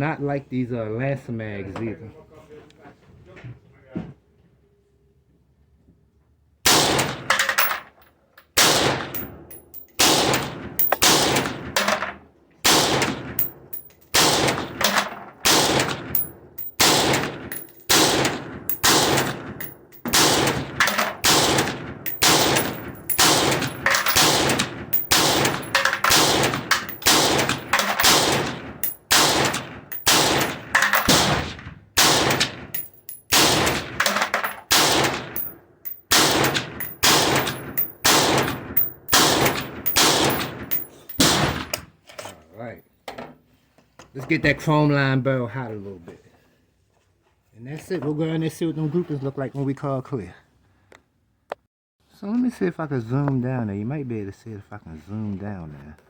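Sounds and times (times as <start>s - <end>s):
rifle gunshots: 6.7s - 7.7s, 8.6s - 12.0s, 12.6s - 35.5s, 36.1s - 41.7s.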